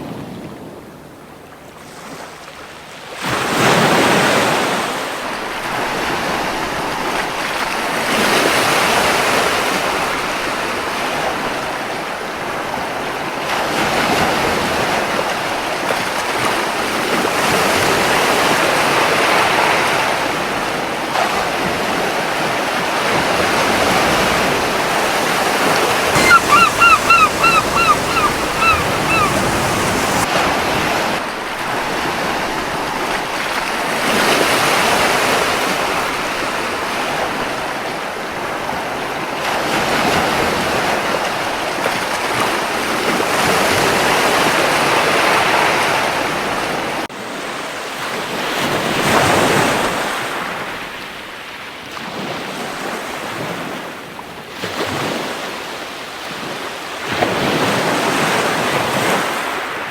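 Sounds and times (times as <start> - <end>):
sea waves washing onto beach: 22.5 - 30.6
seagull calls: 26.1 - 30.2.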